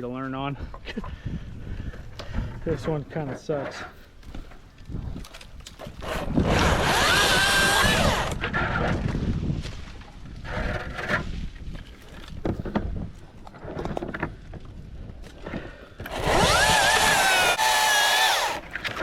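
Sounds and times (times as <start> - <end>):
battery chainsaw whining: 5.9 - 8.4, 16.0 - 19.0.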